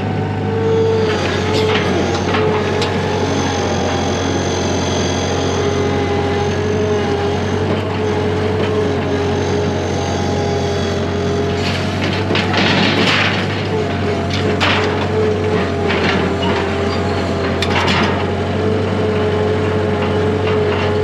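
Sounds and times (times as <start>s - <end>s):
engine humming: 0.0s - 21.0s
metallic clanks and knocks: 11.6s - 16.9s.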